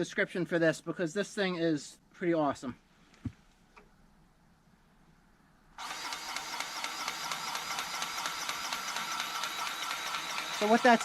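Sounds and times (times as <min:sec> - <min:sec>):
electric grease gun pump ticking: 0:05.8 - 0:11.0.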